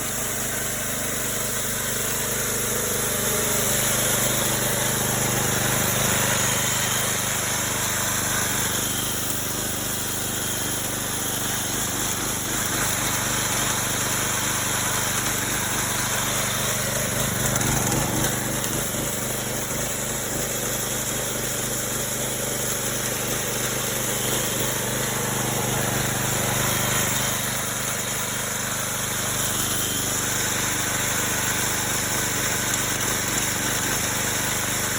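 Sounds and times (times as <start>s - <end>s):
chainsaw cutting log: 0.0s - 34.9s.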